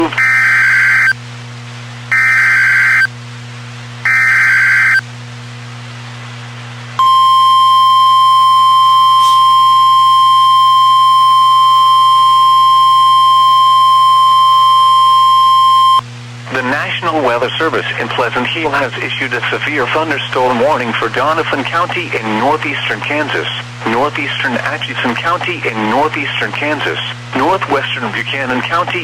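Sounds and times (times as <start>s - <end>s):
screeching data bursts: 0.0s - 1.2s, 2.1s - 3.1s, 4.1s - 5.0s
steady alert tone: 2.1s - 3.1s, 4.1s - 5.0s.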